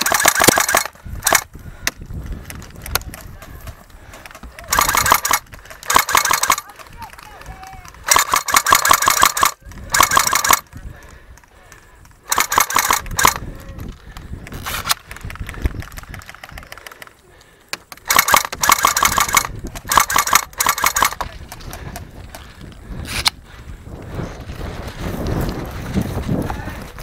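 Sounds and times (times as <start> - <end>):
airsoft guns full-auto bursts: 0.0 - 1.5, 4.7 - 7.0, 7.9 - 10.8, 12.2 - 13.4, 18.0 - 21.8.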